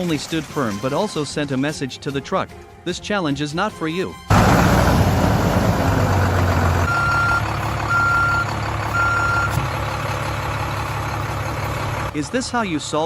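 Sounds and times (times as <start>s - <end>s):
truck engine running: 4.3s - 13.0s
reversing alarm beeps: 6.9s - 9.6s.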